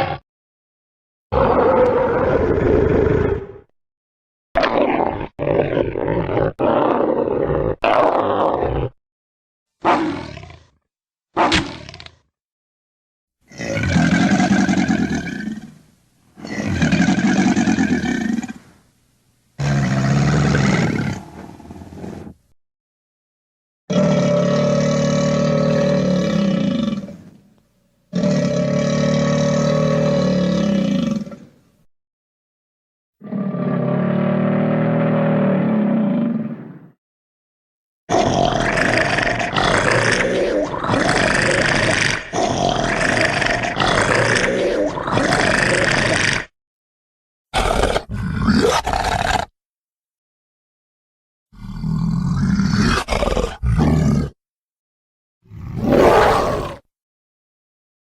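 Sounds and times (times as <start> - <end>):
rough creature roar: 0.0 - 0.2, 1.3 - 3.6, 4.6 - 9.0, 9.8 - 10.8, 13.5 - 15.8, 16.4 - 18.6, 19.6 - 22.4, 23.9 - 27.3, 28.1 - 31.5, 33.2 - 36.8, 38.1 - 46.5, 47.5 - 49.5, 51.5 - 54.4, 55.4 - 56.9.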